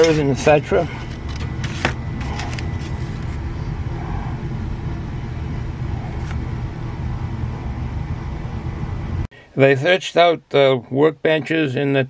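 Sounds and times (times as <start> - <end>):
low background rumble: 0.0 - 9.3.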